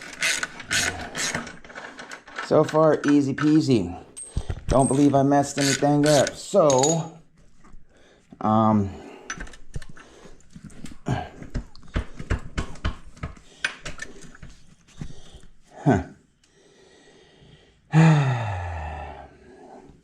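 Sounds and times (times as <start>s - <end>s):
metallic clicks of hand tools: 0.0s - 7.0s
person grunting: 15.8s - 16.2s, 17.9s - 19.3s.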